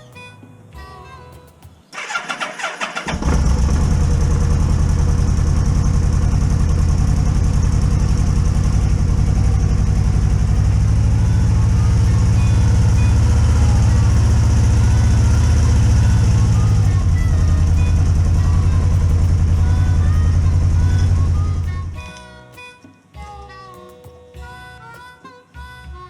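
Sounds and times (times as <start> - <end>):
background music: 0.0 - 26.0
electric starter cranking: 2.0 - 22.0
motorcycle engine idling: 2.0 - 22.0.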